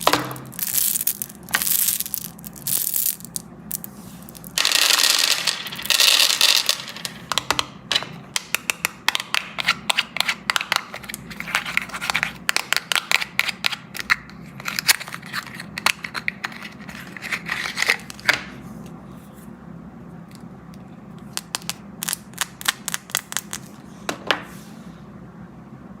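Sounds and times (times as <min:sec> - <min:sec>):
candy wrapper crinkling: 0:00.0 - 0:05.0.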